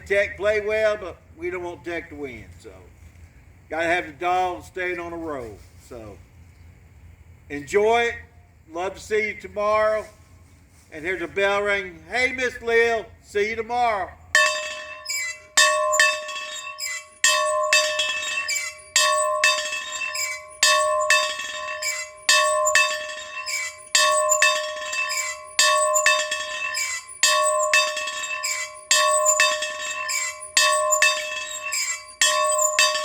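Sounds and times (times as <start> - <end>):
bell ringing: 14.4 - 33.0.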